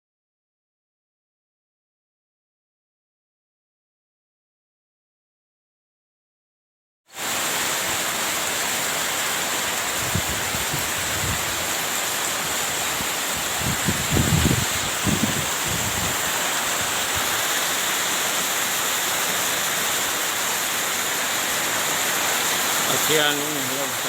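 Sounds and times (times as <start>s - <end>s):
heavy rain pouring: 7.2s - 24.0s
low thunder rumbles: 13.3s - 17.2s.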